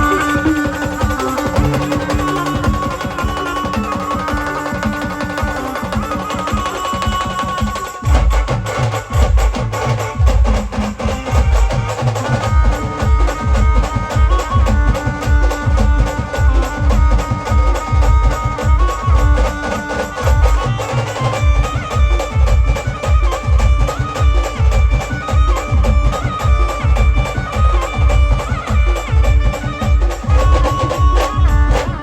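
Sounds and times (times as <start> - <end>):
wavering melody line: 0.0 - 8.1
band playing fast loud music: 0.0 - 32.0
heavy drum beats: 0.0 - 32.0.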